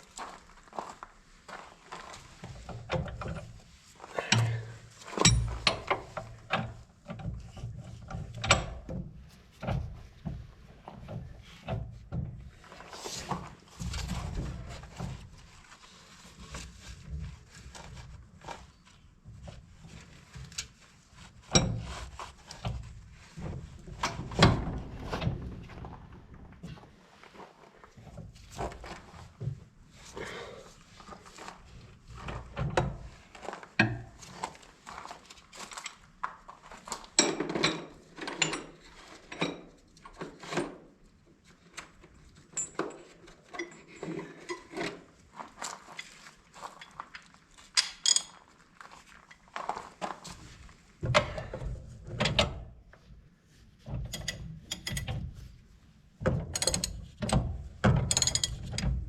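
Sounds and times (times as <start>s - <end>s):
metal tools clanking: 5.2s - 5.9s, 58.1s - 58.9s.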